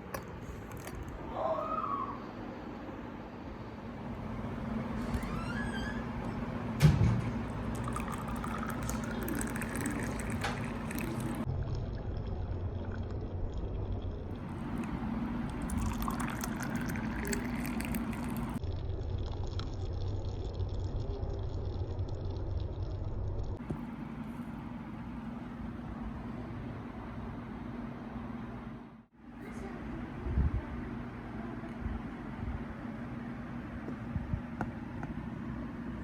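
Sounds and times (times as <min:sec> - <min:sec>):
liquid pouring into container: 0:00.0 - 0:01.3, 0:04.0 - 0:23.7.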